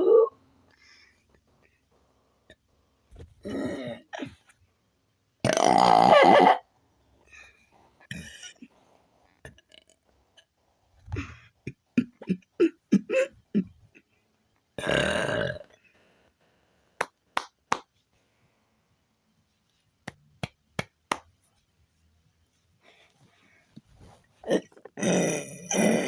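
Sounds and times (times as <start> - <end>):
person burping: 3.4 - 4.4, 5.4 - 6.6, 8.1 - 8.7, 11.1 - 14.0, 14.8 - 15.7, 24.4 - 26.0.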